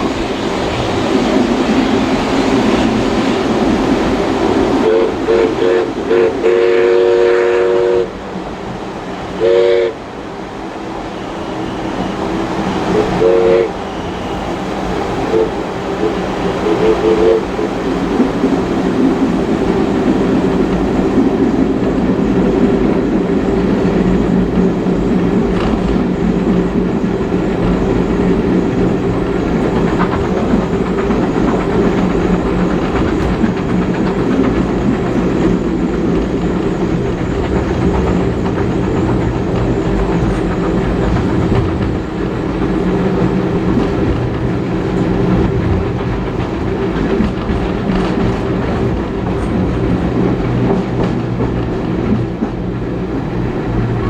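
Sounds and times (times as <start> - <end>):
carriage clickety-clack over rails: 0.0 - 6.1, 11.9 - 54.0
steam whistle blasts: 4.8 - 8.2, 9.4 - 10.0, 11.1 - 17.7.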